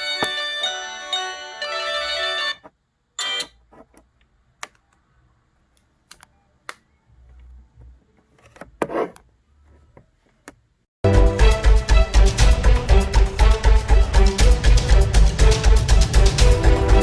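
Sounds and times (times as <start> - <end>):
phone ringtone melody: 0.0 - 2.6, 3.2 - 3.6.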